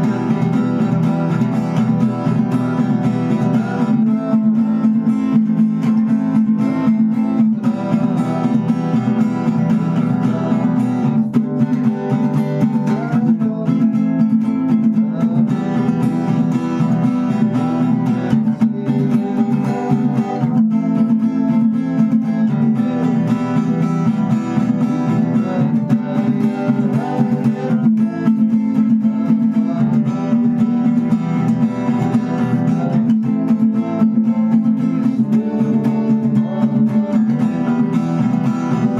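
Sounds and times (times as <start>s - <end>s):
acoustic guitar strumming: 0.0s - 38.9s.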